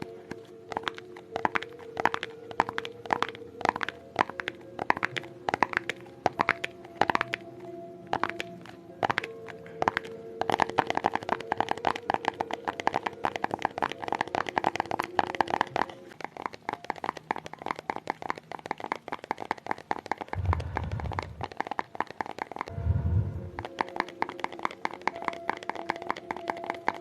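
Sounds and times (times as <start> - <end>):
fingernails tapping rapidly: 0.0 - 7.5, 8.1 - 22.7, 23.6 - 27.0
low rumble: 20.4 - 21.5, 22.7 - 23.7.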